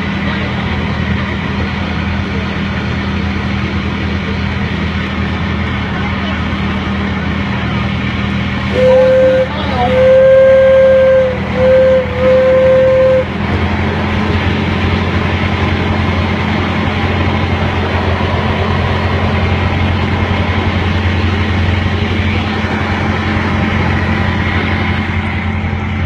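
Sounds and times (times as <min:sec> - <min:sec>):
train running drone: 0:00.0 - 0:26.0
train horn: 0:08.7 - 0:13.6.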